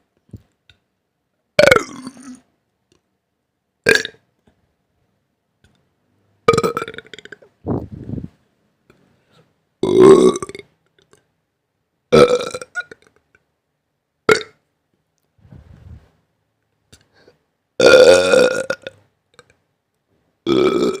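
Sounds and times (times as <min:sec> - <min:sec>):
person burping: 0:01.6 - 0:02.5, 0:03.9 - 0:04.2, 0:06.5 - 0:07.8, 0:09.8 - 0:10.6, 0:12.1 - 0:13.1, 0:14.3 - 0:14.6, 0:17.8 - 0:19.5, 0:20.5 - 0:21.0.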